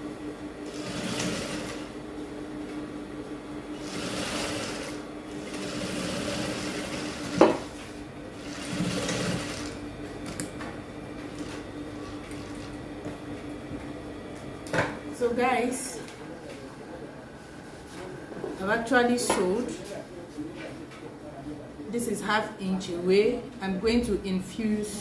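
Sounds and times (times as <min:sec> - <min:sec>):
motor hum: 0:00.0 - 0:19.1
sewing machine stitching: 0:00.7 - 0:01.9, 0:03.8 - 0:07.4, 0:08.4 - 0:09.8.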